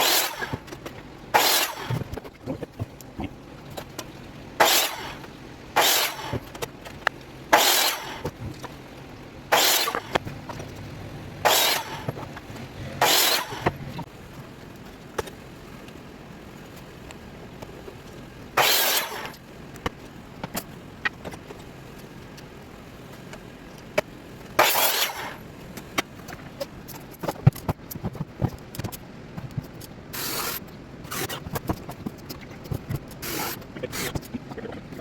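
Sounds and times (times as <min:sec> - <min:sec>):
power tool bursts: 0:00.0 - 0:00.6, 0:01.3 - 0:02.0, 0:04.6 - 0:05.2, 0:05.8 - 0:06.4, 0:07.5 - 0:08.3, 0:09.5 - 0:10.2, 0:11.4 - 0:12.1, 0:12.8 - 0:13.8, 0:18.6 - 0:19.3, 0:24.6 - 0:25.4.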